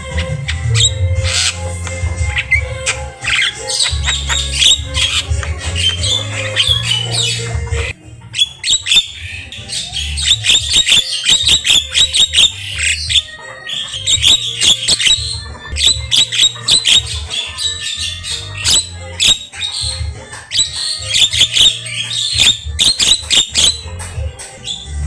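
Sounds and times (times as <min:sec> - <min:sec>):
low beat pulsing: 0:00.0 - 0:02.9
bird singing squawks and whistles: 0:00.0 - 0:24.0, 0:24.6 - 0:25.0.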